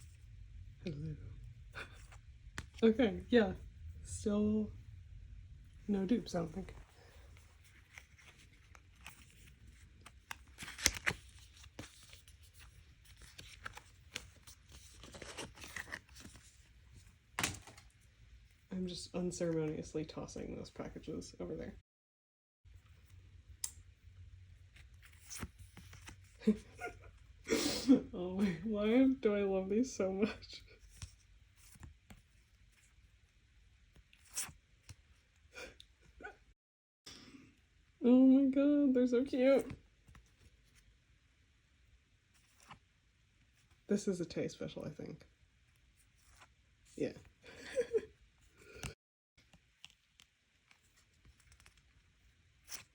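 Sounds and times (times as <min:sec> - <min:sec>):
photocard packaging clicks and rustles: 0:07.3 - 0:18.0, 0:48.7 - 0:52.9
packs being torn open: 0:10.0 - 0:12.1.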